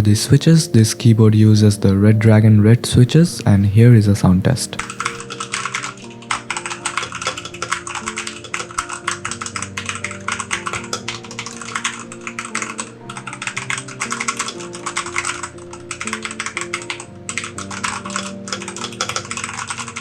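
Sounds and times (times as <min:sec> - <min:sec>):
background music: 0:00.0 - 0:20.0
fast mechanical keyboard typing: 0:04.8 - 0:20.0.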